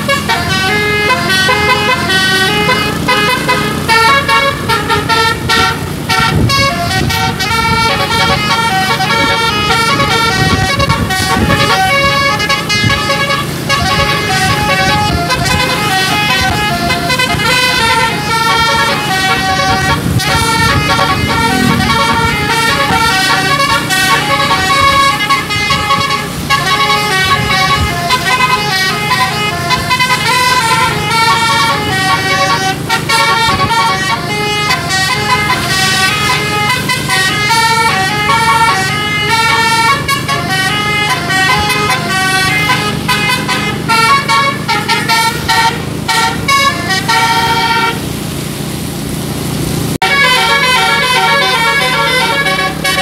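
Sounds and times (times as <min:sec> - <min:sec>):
bus musical air horn: 0:00.0 - 0:53.0
low engine hum: 0:00.0 - 0:53.0.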